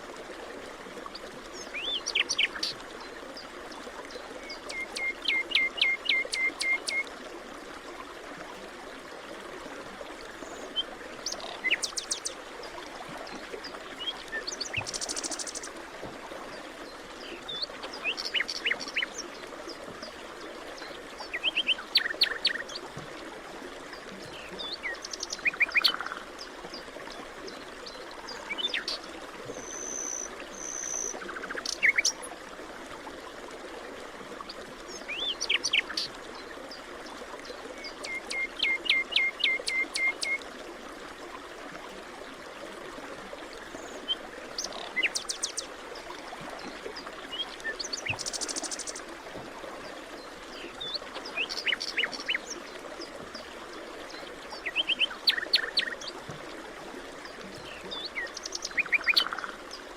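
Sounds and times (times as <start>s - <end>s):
running water: 0.0s - 59.9s.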